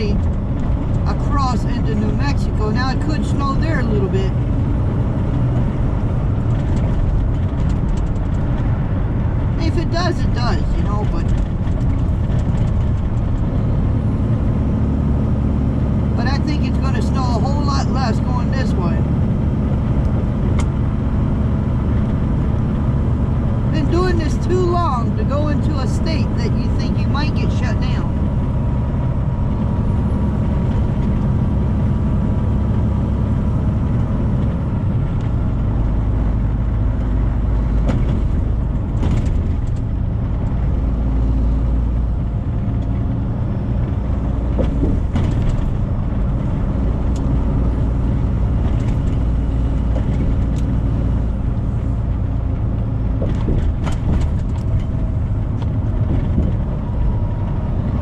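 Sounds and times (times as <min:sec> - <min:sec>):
truck engine and road drone: 0:00.0 - 0:58.0
knocks and rattles from bumps: 0:05.3 - 0:09.0, 0:10.7 - 0:13.8, 0:37.1 - 0:41.2, 0:44.2 - 0:46.6, 0:52.2 - 0:58.0.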